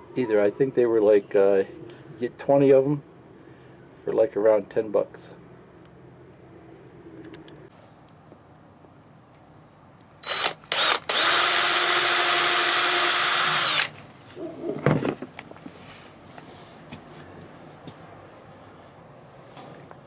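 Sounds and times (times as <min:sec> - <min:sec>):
electric drill whining: 0:10.2 - 0:14.0.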